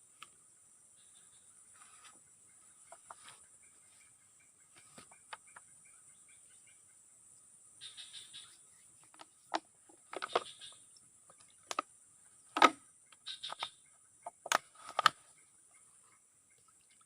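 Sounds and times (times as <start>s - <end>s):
sharp knocks and clicks: 12.6s - 12.8s.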